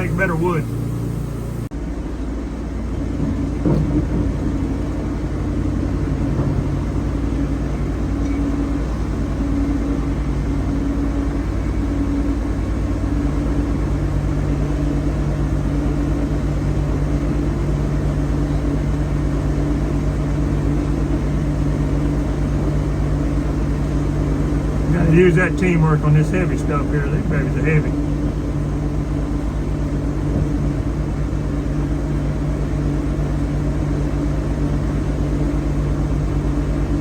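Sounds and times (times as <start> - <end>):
band sawmill running: 0.0 - 1.7, 21.4 - 31.5.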